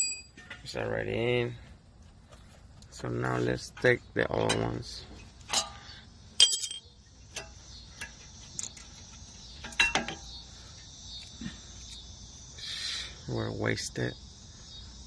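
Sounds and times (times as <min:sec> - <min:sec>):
metal clinks and clicks: 0:06.4 - 0:06.9.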